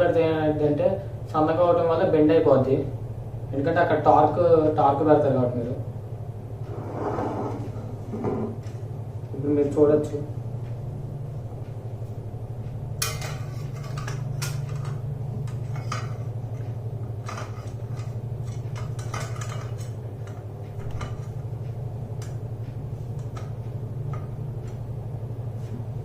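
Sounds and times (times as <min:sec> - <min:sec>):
steady low hum: 0:00.0 - 0:26.0
metal spanner tapping and clicking: 0:13.0 - 0:21.4.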